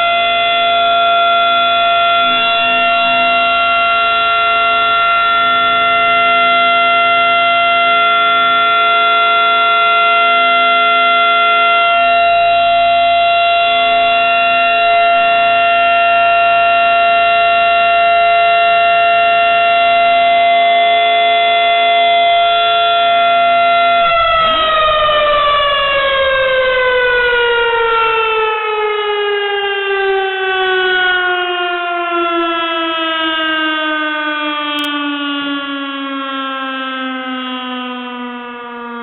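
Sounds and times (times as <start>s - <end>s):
warning siren winding down: 0.0s - 39.0s.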